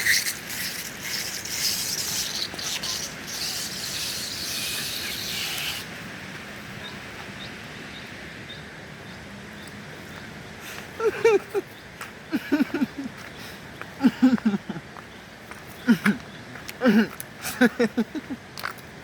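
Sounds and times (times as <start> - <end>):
bicycle tyres on gravel: 0.0 - 6.6
steady hiss: 0.0 - 18.4.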